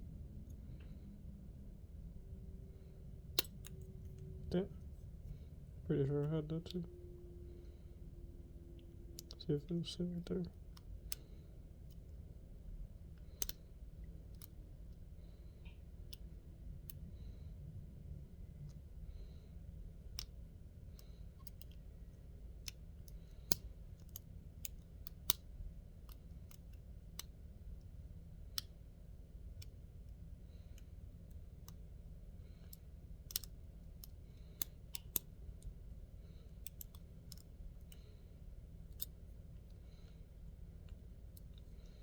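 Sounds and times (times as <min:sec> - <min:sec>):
faint low hum: 0:00.0 - 0:42.0
lock pick clicking and scraping: 0:03.4 - 0:04.3, 0:32.6 - 0:35.8, 0:36.5 - 0:38.0.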